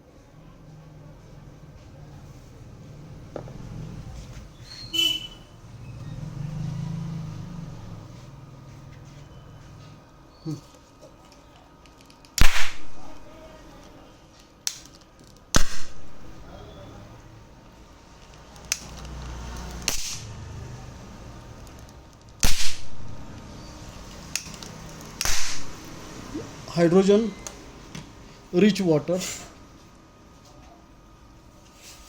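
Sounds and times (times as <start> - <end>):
sharp gas ignition pops: 12.4 - 13.0, 15.5 - 16.2, 19.8 - 20.3, 22.4 - 23.1, 25.2 - 25.8.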